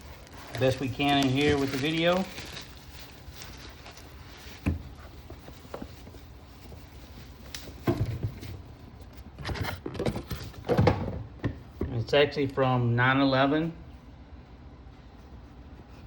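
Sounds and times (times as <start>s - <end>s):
parcel being unpacked: 0.0s - 10.7s.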